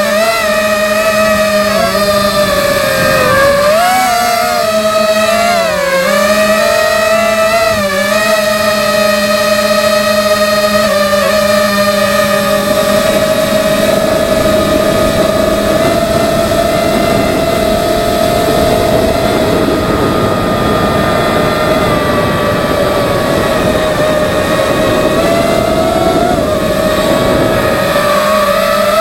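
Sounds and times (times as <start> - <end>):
quadcopter motors whining: 0.0 - 29.0
rushing air noise: 1.0 - 4.9.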